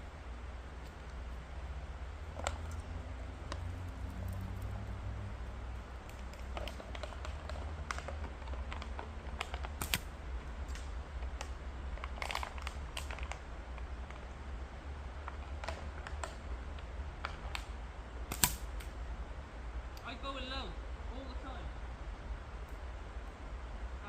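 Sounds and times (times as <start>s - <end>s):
low steady rumble: 0.0s - 24.0s
slingshot clicks and taps: 6.0s - 10.1s, 18.3s - 18.9s
slingshot snap: 9.8s - 10.1s, 18.3s - 18.9s.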